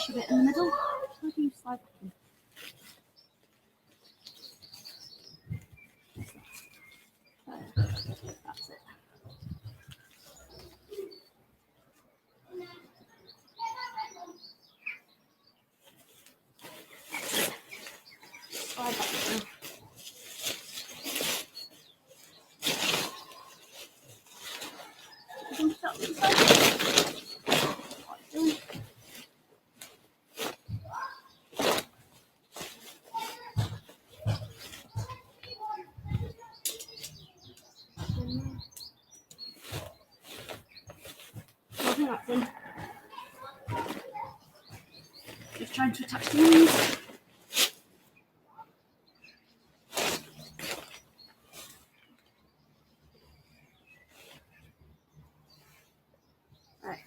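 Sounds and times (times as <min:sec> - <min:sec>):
tent fabric rustling: 0:00.0 - 0:08.5, 0:15.8 - 0:37.2, 0:39.3 - 0:48.2, 0:49.8 - 0:52.0, 0:53.4 - 0:57.0
birds chirping: 0:00.0 - 0:57.0
faint background noise: 0:00.0 - 0:57.0.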